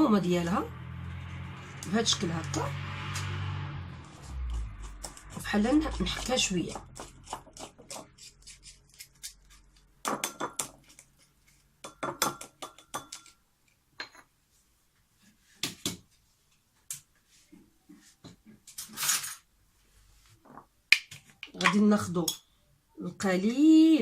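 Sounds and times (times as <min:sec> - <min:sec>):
long utensil scrape: 0:01.0 - 0:09.6.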